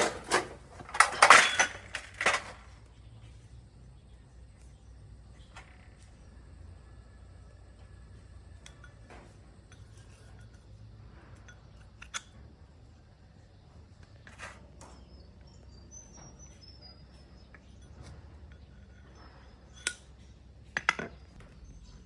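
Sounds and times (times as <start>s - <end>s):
small birds chirping: 2.7s - 6.7s, 9.8s - 22.0s.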